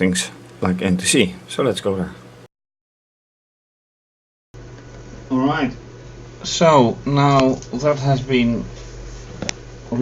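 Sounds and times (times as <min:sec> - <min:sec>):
faint room hiss: 0:00.0 - 0:02.5, 0:04.6 - 0:10.0
steady low hum: 0:00.0 - 0:02.5, 0:04.6 - 0:10.0.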